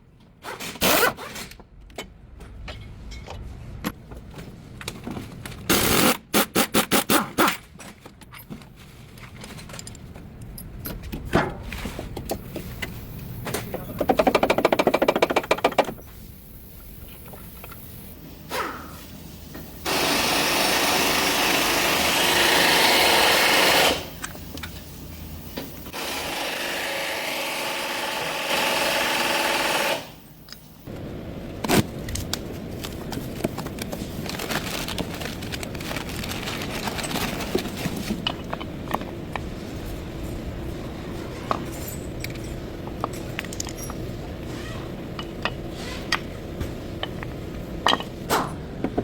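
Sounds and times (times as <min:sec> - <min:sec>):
sharp clicks and knocks: 0:13.5 - 0:16.0
power tool running: 0:19.8 - 0:24.1, 0:25.9 - 0:30.2.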